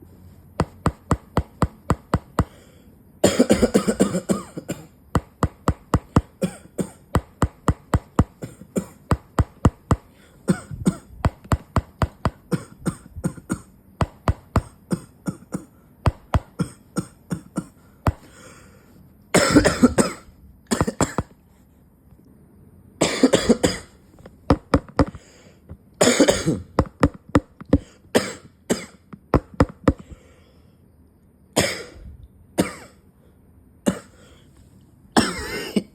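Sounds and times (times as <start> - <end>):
person coughing: 3.2 - 5.0, 5.7 - 7.2, 8.1 - 9.1, 10.1 - 11.7, 12.5 - 13.7, 14.5 - 15.8, 16.4 - 18.5, 19.3 - 21.3, 23.0 - 24.0, 26.0 - 26.9, 27.7 - 29.1, 31.6 - 32.0, 32.6 - 33.0, 33.8 - 34.3, 35.2 - 35.9.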